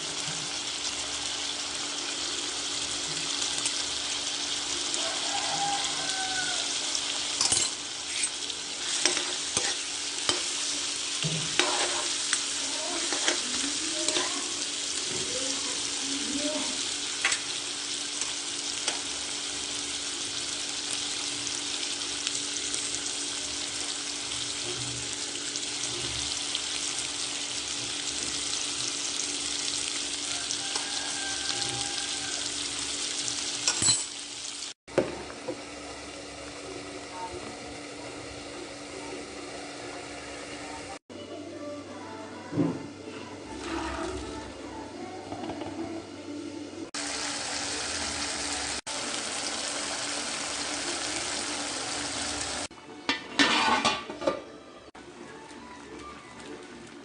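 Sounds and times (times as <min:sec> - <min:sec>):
food sizzling in hot oil: 0:00.0 - 0:41.1, 0:46.9 - 0:52.7, 0:53.4 - 0:54.0
spoon scraping a pan: 0:07.4 - 0:14.6, 0:53.1 - 0:54.4.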